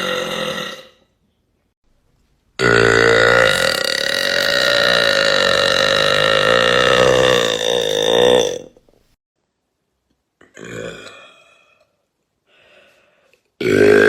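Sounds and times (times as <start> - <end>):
woman burping: 2.6 - 8.8, 10.4 - 11.7.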